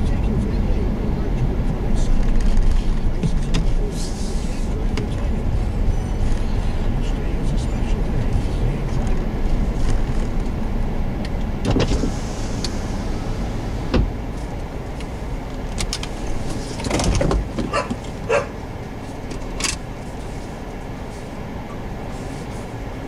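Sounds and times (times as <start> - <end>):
vehicle engine rumbling: 0.0 - 23.0
sharp clicks and knocks: 13.9 - 18.2.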